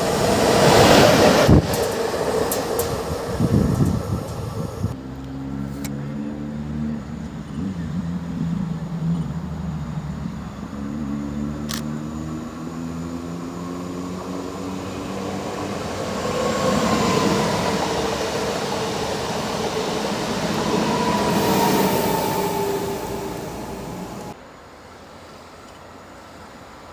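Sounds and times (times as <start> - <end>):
train wheel and running noise: 0.0 - 5.0, 14.2 - 24.4
electric train traction whine: 8.6 - 24.4
thin squealing tone: 19.8 - 24.3.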